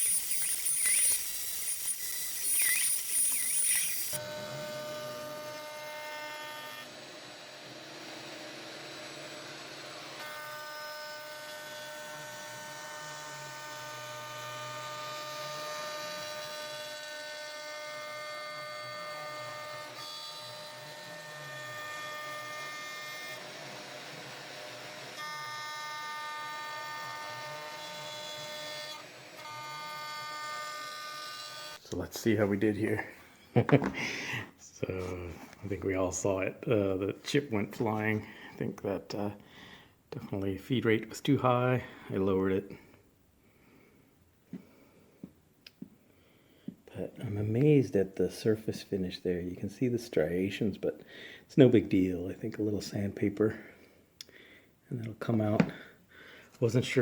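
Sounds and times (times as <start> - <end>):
high-pitched router whine: 0.0 - 16.5
router motor whine: 0.0 - 31.8.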